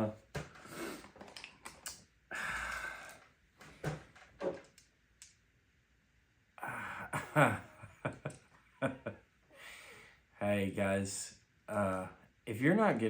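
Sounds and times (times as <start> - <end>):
person sighing: 2.3 - 3.2, 6.6 - 7.6.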